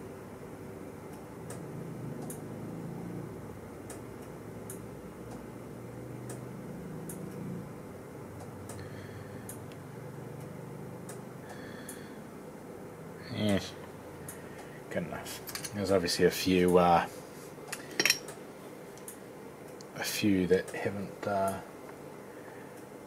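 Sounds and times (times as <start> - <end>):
steady low hum: 0.0 - 23.0
sharp light ticks: 2.2 - 2.4, 6.2 - 7.5.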